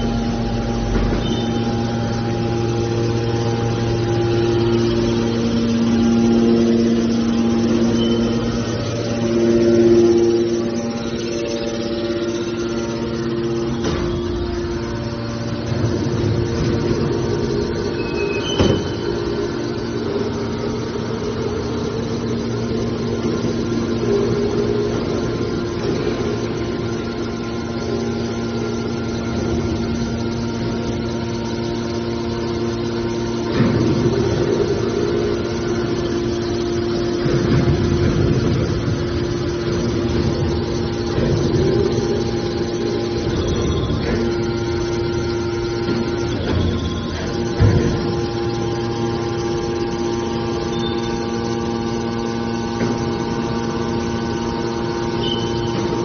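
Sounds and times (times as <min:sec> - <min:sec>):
hydraulic machine humming: 0:00.0 - 0:56.0
sharp metallic knocks: 0:00.4 - 0:19.8.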